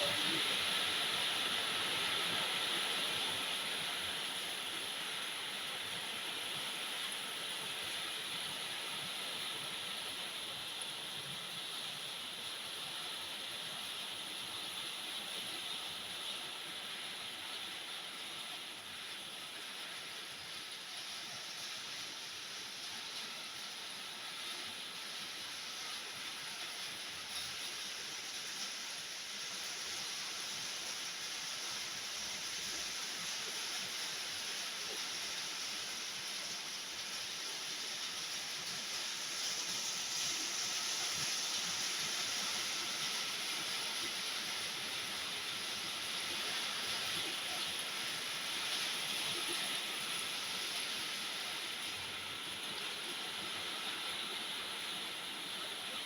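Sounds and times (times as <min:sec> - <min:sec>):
heavy rain hiss: 0:00.0 - 0:56.0.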